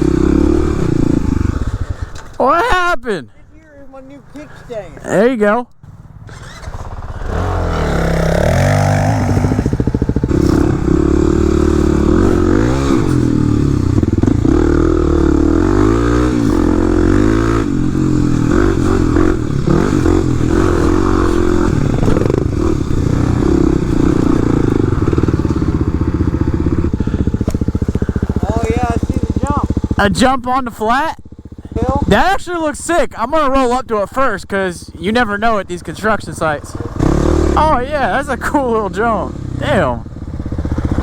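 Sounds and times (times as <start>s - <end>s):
dirt bike engine revving: 0.0s - 2.7s, 4.4s - 41.0s.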